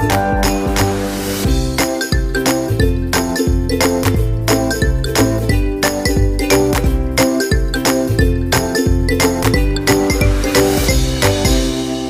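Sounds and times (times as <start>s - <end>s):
music with beat and chiming notes: 0.0s - 12.0s.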